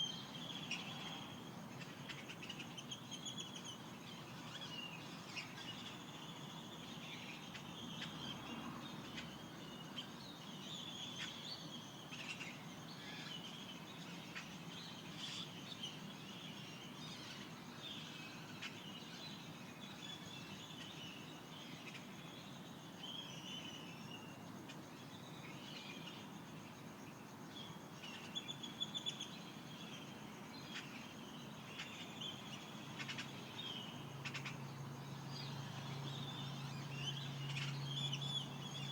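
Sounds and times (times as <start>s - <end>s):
faint background hiss: 0.0s - 38.9s
small birds chirping and trilling: 27.6s - 38.9s.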